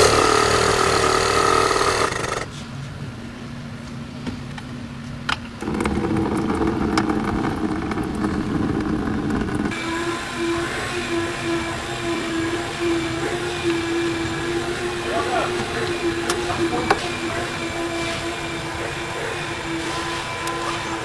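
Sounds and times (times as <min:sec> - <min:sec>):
vehicle engine running: 0:05.4 - 0:19.6.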